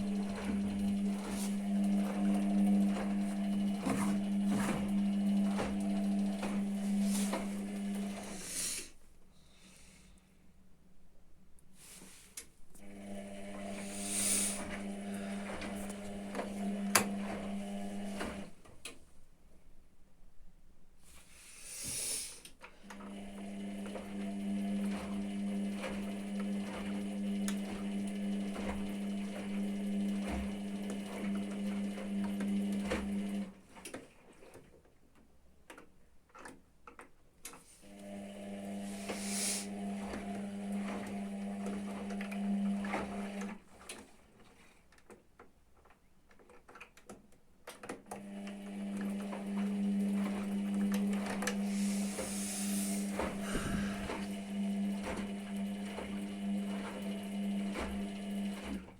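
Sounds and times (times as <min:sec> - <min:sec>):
washing machine drum tumbling: 0:00.0 - 0:08.2, 0:51.0 - 0:58.9.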